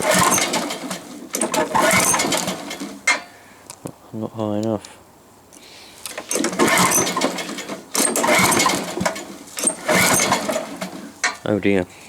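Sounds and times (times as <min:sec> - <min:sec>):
engine recoil cord cranking: 0:00.0 - 0:03.3, 0:06.0 - 0:11.5.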